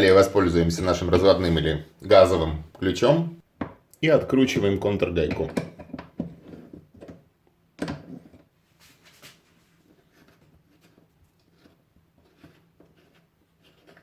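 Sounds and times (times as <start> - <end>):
nut scraping: 9.8 - 14.0.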